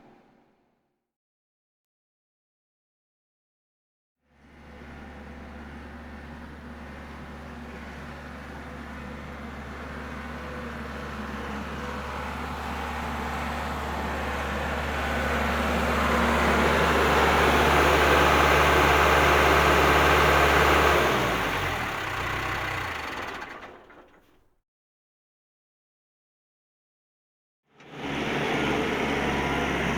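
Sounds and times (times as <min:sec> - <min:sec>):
loader engine running: 0:04.9 - 0:24.2.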